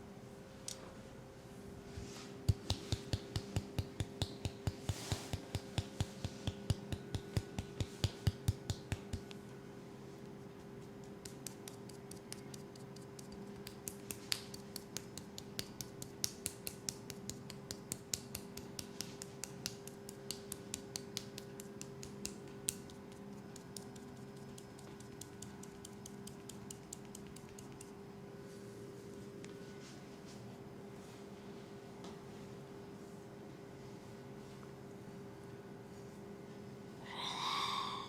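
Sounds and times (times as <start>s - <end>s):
steady low hum: 0.0s - 38.0s.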